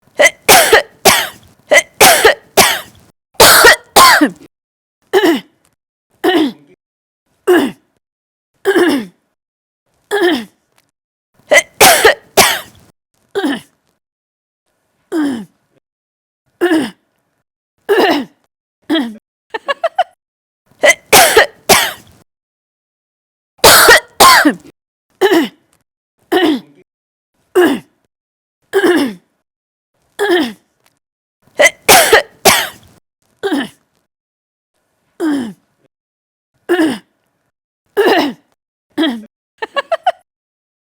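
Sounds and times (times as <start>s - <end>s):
woman coughing: 0.2s - 4.4s, 11.5s - 12.7s, 20.8s - 22.1s, 23.6s - 24.6s, 26.3s - 26.6s, 31.6s - 32.8s, 38.0s - 38.4s.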